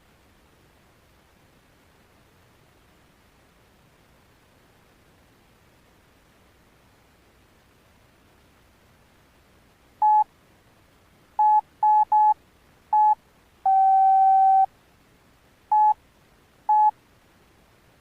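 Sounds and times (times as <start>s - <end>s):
phone key beeps: 10.0s - 10.2s, 11.4s - 12.4s, 13.0s - 14.7s, 15.7s - 16.0s, 16.7s - 16.9s
longer lower phone tone: 10.0s - 10.3s, 13.0s - 14.7s, 15.7s - 16.0s, 16.7s - 16.9s.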